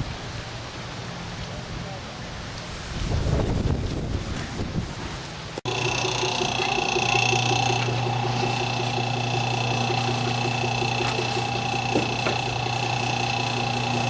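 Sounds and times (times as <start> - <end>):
electric motor humming and whining: 5.7 - 14.0
fast even ticking from drive: 5.7 - 14.0.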